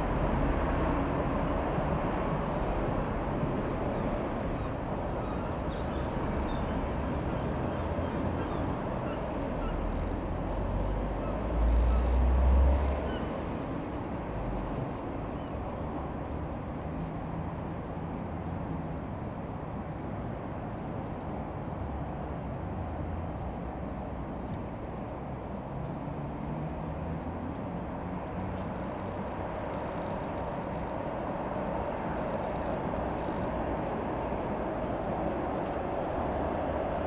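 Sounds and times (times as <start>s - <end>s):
outdoor noise: 0.0s - 37.0s
light aircraft engine running: 12.9s - 37.0s.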